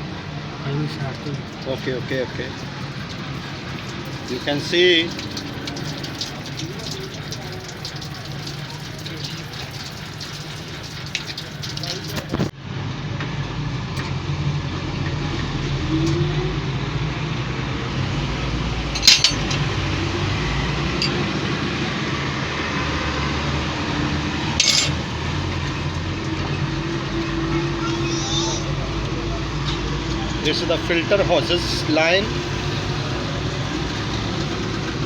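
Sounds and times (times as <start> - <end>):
metallic clinks of tools on metal: 19.0 - 19.6, 24.6 - 25.0.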